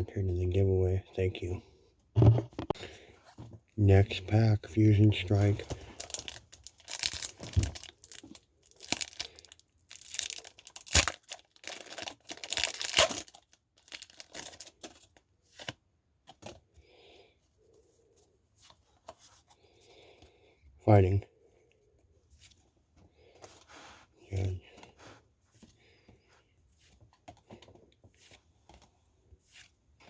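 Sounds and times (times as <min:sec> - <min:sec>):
foil wrapper tearing and crinkling: 0:05.9 - 0:14.8.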